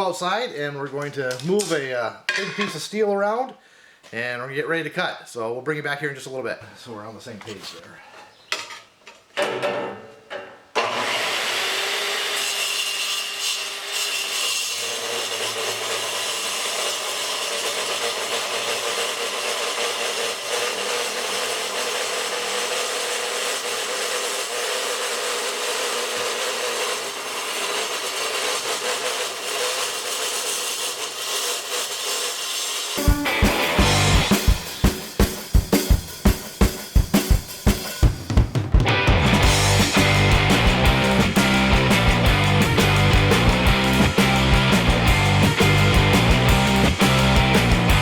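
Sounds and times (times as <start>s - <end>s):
circular saw cutting steel: 10.8s - 35.0s.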